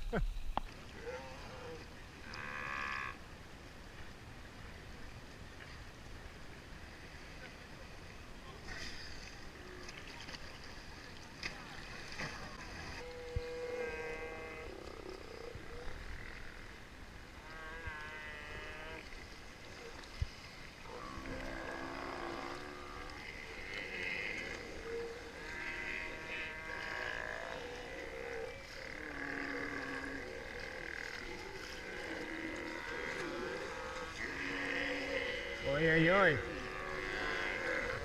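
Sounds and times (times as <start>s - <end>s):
sea lions roaring and growling: 0.9s - 3.0s, 20.8s - 38.0s.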